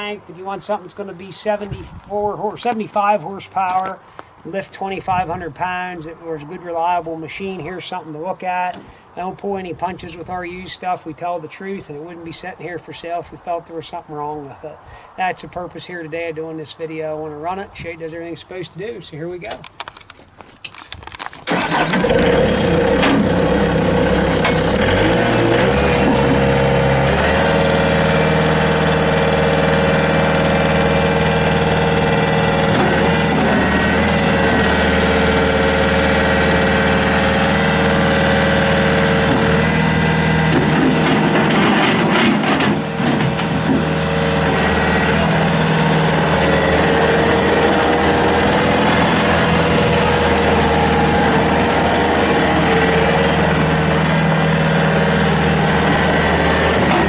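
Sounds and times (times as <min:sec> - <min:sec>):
diesel engine starting and running: 0:00.0 - 0:20.0, 0:20.6 - 0:57.0
steady whine: 0:17.0 - 0:57.0.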